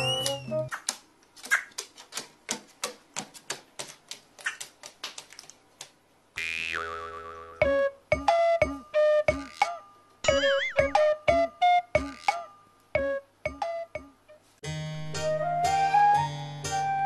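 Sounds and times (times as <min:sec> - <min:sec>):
music: 0:00.0 - 0:00.7, 0:07.6 - 0:17.0.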